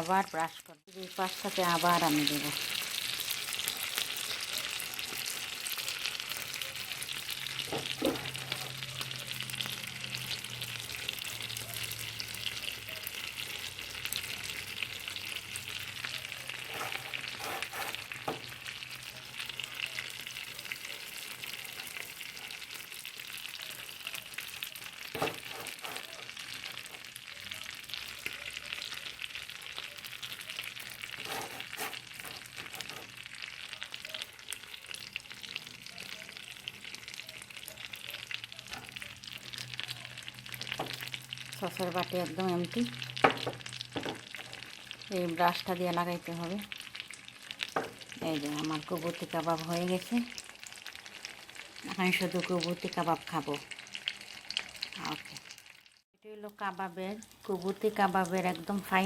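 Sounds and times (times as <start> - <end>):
kebabs sizzling: 0.0 - 59.0.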